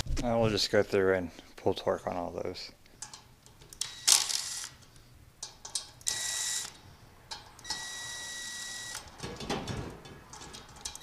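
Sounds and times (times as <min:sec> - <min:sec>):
low clatter of handling: 0:09.2 - 0:11.0.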